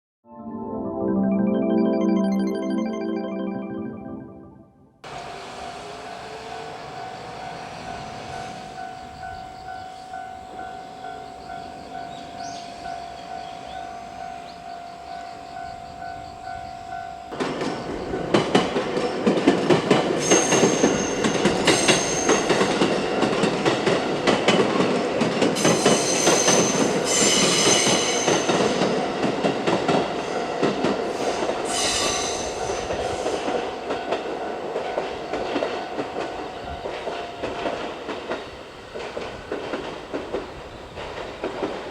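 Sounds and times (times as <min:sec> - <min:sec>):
high-pitched tones: 0:00.2 - 0:05.0
level crossing bell ringing: 0:00.4 - 0:04.9
train wheels clattering over rail joints: 0:17.3 - 0:41.9.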